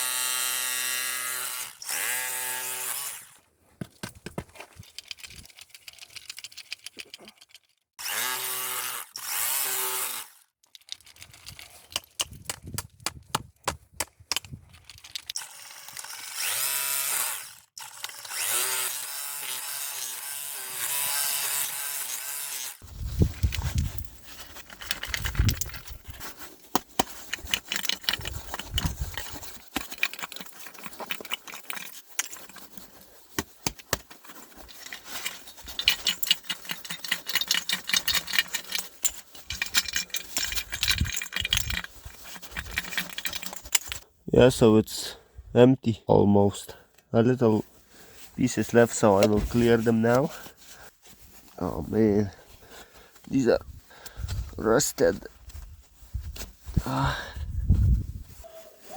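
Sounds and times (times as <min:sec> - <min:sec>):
broken pieces clattering: 0:23.5 - 0:44.0.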